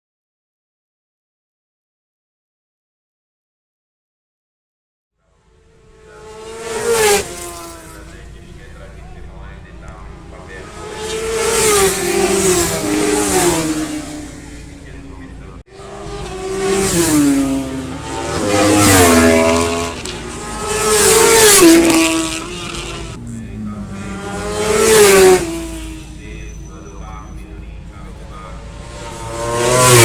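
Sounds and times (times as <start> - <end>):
motorcycles passing at speed: 5.4 - 30.0.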